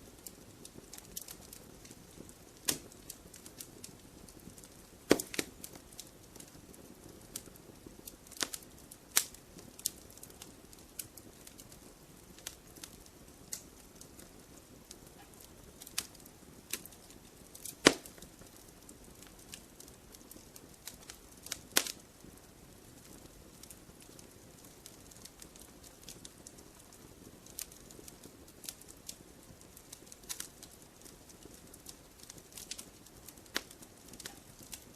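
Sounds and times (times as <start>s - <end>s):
soft rushing of flames: 0.0s - 34.9s
wood fire crackling: 0.0s - 34.9s
sharp pops and snaps: 0.2s - 7.6s, 8.2s - 11.8s, 15.2s - 22.0s, 29.8s - 34.9s.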